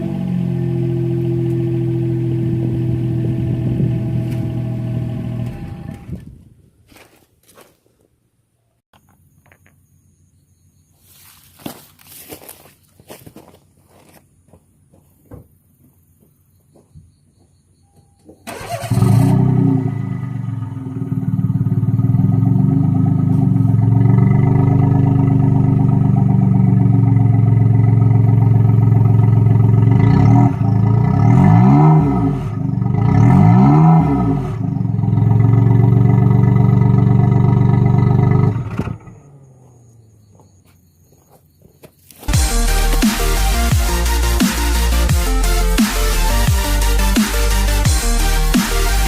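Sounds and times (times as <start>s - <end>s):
car engine idling and revving: 0.0s - 6.2s, 18.4s - 40.7s, 42.3s - 49.0s.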